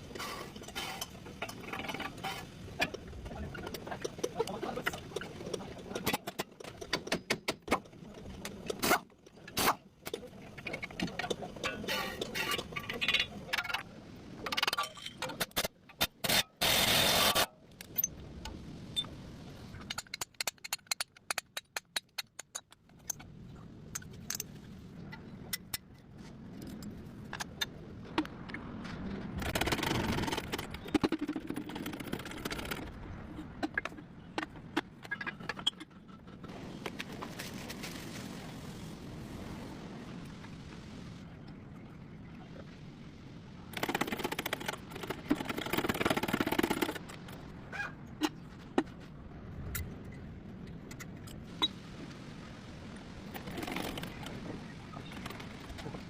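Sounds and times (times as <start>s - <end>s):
metal tools clinking and scraping: 14.5s - 15.6s
fast clicks: 29.4s - 33.0s, 43.7s - 47.4s.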